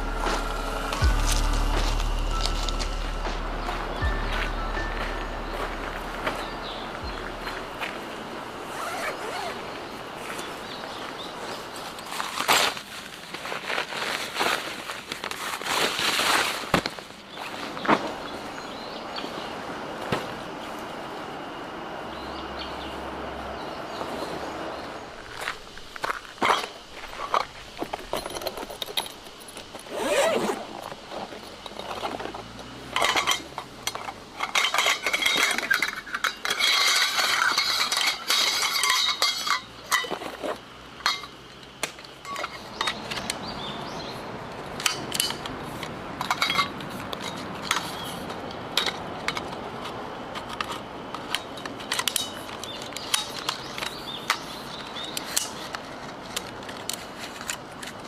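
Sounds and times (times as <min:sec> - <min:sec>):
steady hiss: 0:00.0 - 0:43.4
metal utensils clinking: 0:32.9 - 0:40.3, 0:41.0 - 0:41.4, 0:46.2 - 0:47.9.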